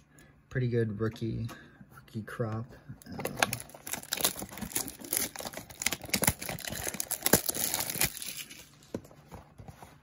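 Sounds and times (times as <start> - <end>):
packaging crinkling and tearing: 3.1 - 9.0.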